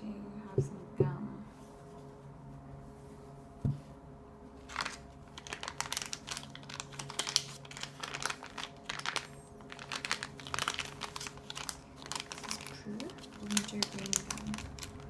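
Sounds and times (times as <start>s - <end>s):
wrapper crinkling: 4.6s - 15.0s.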